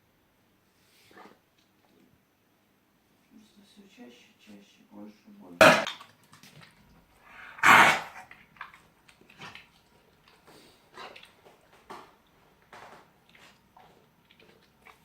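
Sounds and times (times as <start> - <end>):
dog coughing and hacking: 5.6 - 6.0, 7.4 - 8.4.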